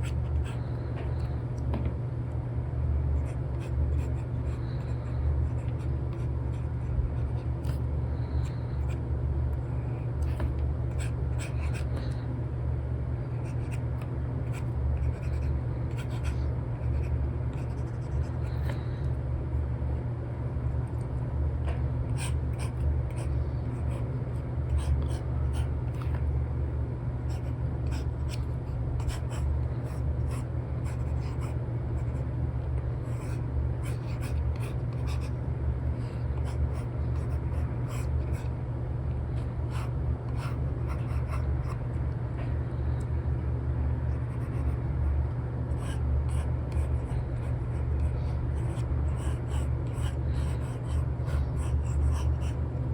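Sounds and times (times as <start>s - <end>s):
steady low hum: 0.0s - 52.9s
steady low rumble: 0.0s - 52.9s
stylus scratching and tapping on screen: 10.2s - 12.2s, 13.4s - 18.8s, 21.7s - 26.2s, 27.3s - 32.2s, 33.1s - 35.4s, 36.4s - 38.6s, 39.4s - 41.9s, 44.1s - 44.8s, 45.7s - 52.6s
stylus scratching on screen film: 14.5s - 18.7s, 33.1s - 35.4s.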